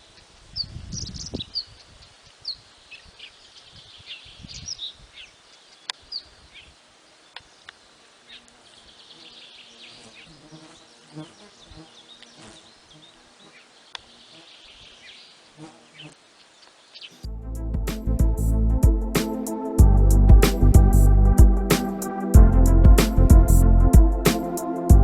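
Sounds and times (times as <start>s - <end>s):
flying insect buzzing: 7.0s - 16.3s.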